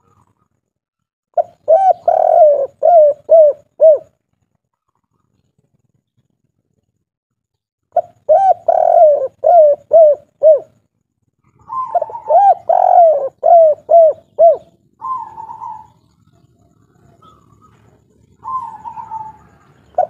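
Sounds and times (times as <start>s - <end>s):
dove cooing: 1.4s - 4.2s, 7.9s - 10.8s, 11.4s - 20.0s
softer rougher bird call: 17.1s - 20.0s.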